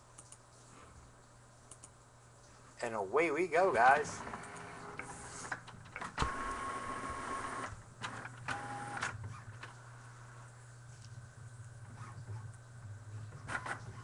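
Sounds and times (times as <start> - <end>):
printer mechanical whine: 3.7 - 9.8, 13.3 - 14.0.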